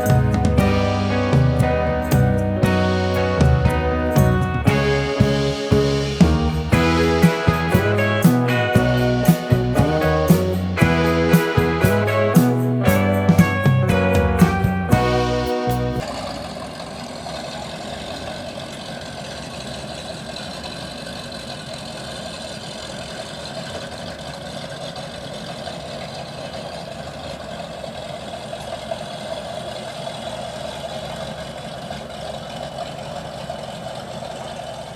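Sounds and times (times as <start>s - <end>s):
guitar music: 0.0s - 16.0s
motorboat engine idling: 0.0s - 34.9s.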